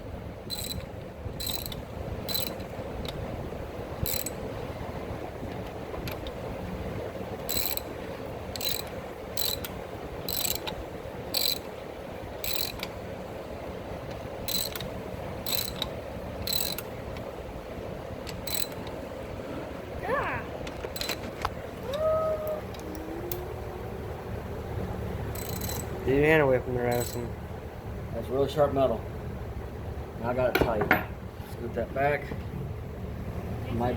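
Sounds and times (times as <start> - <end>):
ratchet wrench clicking: 0.5 - 3.2, 4.0 - 4.4, 7.5 - 7.9, 8.5 - 11.7, 12.4 - 12.9, 14.1 - 16.9, 18.2 - 19.0, 25.3 - 26.0, 26.9 - 27.3.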